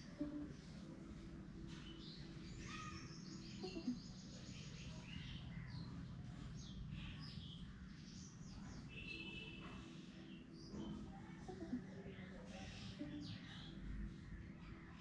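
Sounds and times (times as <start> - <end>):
steady low hum: 0.0 - 2.4
small birds chirping: 0.0 - 15.0.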